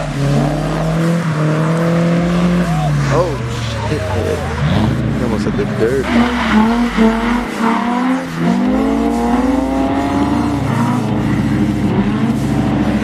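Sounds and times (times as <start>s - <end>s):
car engine revving hard: 0.0s - 13.0s.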